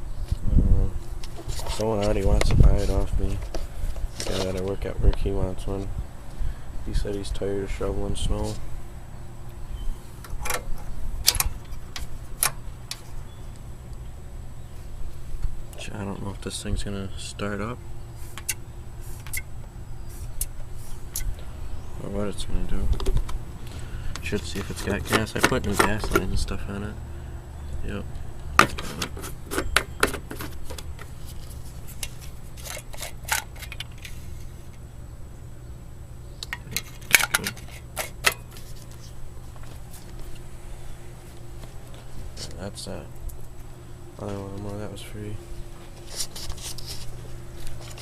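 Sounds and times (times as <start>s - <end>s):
steady low hum: 0.0s - 48.0s
hands handling parts clicking: 28.6s - 34.2s, 36.4s - 39.1s.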